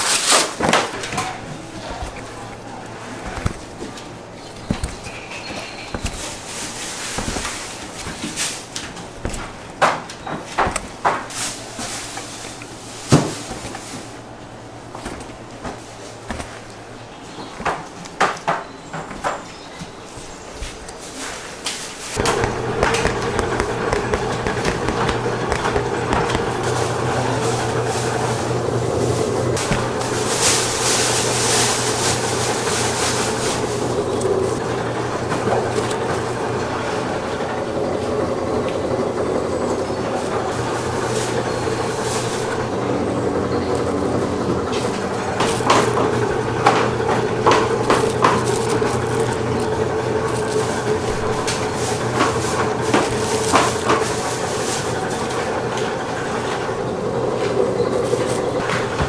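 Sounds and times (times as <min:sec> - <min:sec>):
clicks and knocks: 0:22.2 - 0:26.7
machine humming: 0:22.2 - 0:59.0.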